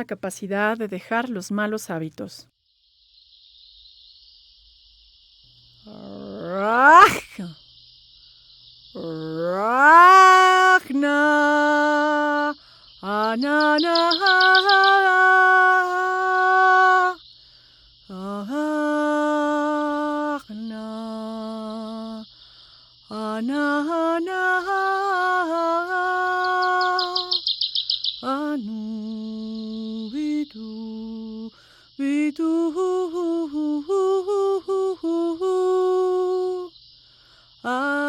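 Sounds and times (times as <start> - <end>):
crickets chirping: 0.0 - 38.0
woman singing sustained vowel tones: 5.9 - 7.6, 8.9 - 17.2, 18.1 - 22.4, 23.1 - 27.5, 28.2 - 36.7, 37.6 - 38.0.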